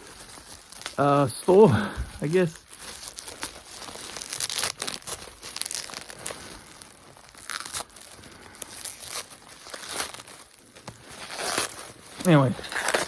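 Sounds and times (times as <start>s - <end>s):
packaging torn and crumpled: 0.0s - 13.0s.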